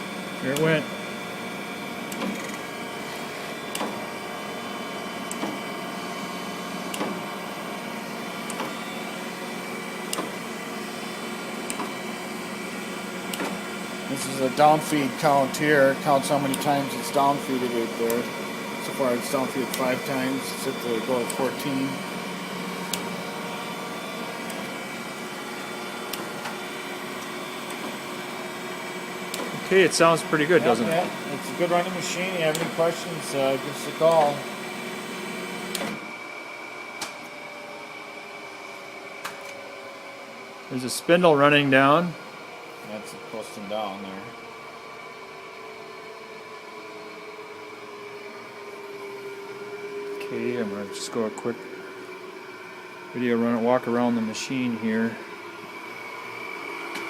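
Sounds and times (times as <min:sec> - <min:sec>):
surface grinder humming: 0:07.4 - 0:35.7.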